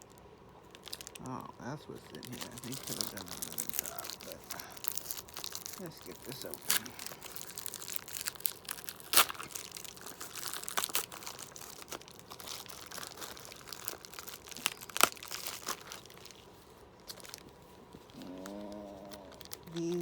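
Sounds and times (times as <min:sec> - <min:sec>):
packaging crinkling and tearing: 0:00.0 - 0:20.0
sharp packaging snaps: 0:02.1 - 0:16.3.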